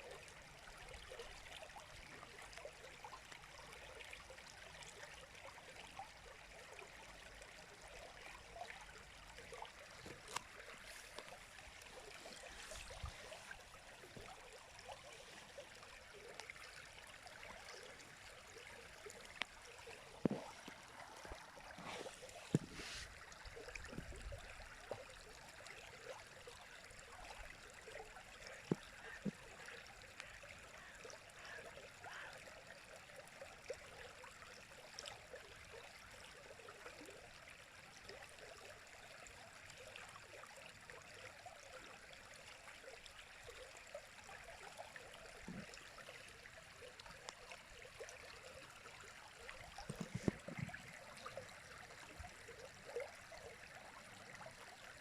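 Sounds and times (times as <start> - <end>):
water splashing and gurgling: 7.6 - 32.9, 44.4 - 55.0.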